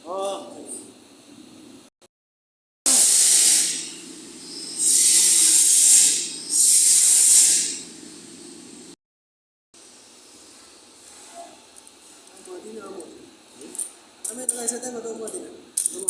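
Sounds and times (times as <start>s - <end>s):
loud hissing blasts: 2.9s - 8.0s.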